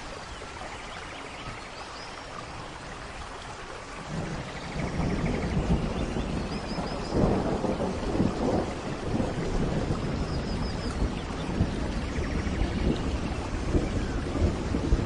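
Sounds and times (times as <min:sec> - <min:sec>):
heavy rain: 0:00.0 - 0:15.0
low rumbling thunder: 0:04.0 - 0:15.0.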